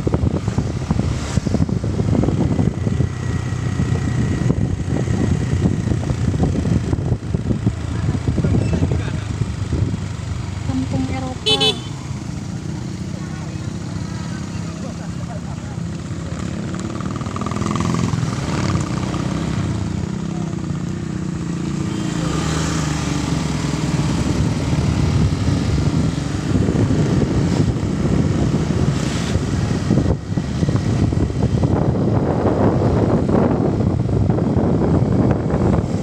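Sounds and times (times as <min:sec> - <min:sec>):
vehicle engine running: 0:01.8 - 0:18.1.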